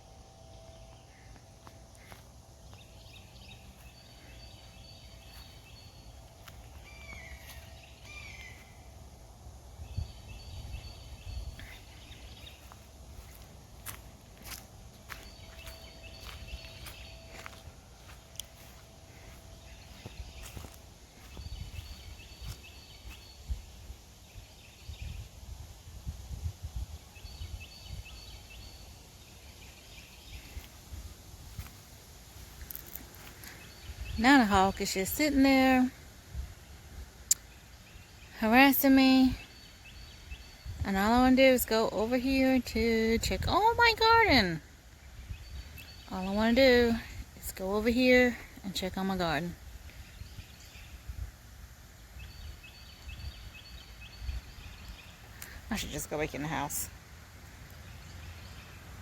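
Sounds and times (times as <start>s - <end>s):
lower down-slurred bird calls: 0.0s - 9.1s
small birds chirping: 0.0s - 25.6s, 26.4s - 59.0s
wind rumble on microphone: 9.6s - 28.8s.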